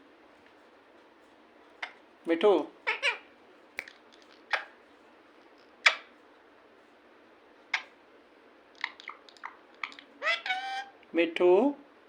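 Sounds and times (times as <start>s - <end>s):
parakeet chirps: 4.3s - 4.8s, 5.8s - 6.1s, 7.7s - 8.0s, 8.8s - 10.9s.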